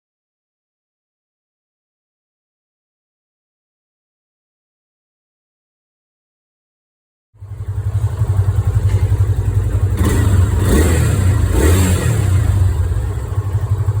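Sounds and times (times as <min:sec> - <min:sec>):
motorcycle engine running: 0:07.4 - 0:14.0.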